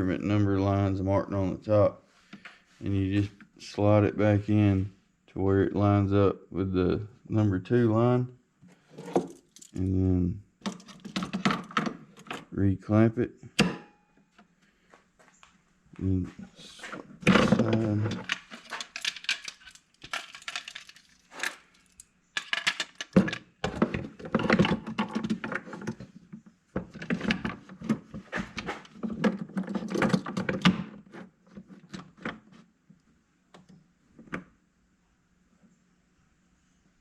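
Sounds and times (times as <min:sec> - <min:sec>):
jig clicking and rattling: 0:18.1 - 0:25.9.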